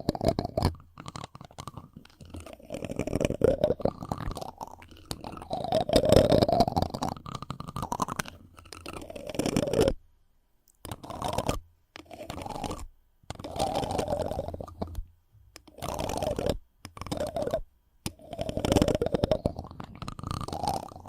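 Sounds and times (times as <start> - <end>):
rubbing and scratching on microphone: 0.0 - 10.0, 10.8 - 21.0.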